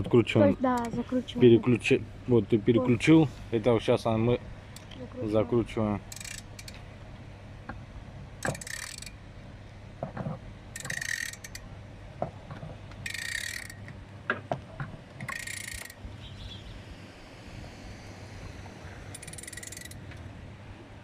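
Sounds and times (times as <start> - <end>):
ratchet wrench clicking: 6.1 - 6.8, 8.4 - 9.2, 10.8 - 11.6, 13.0 - 13.9, 15.3 - 16.0, 19.1 - 20.0.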